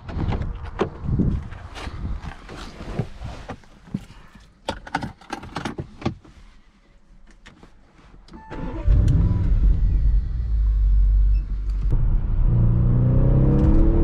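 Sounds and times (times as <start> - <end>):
car engine starting: 8.4 - 14.0.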